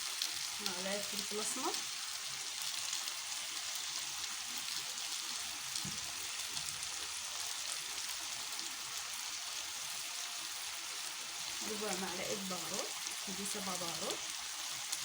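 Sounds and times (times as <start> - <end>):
food sizzling in a frying pan: 0.0 - 15.0.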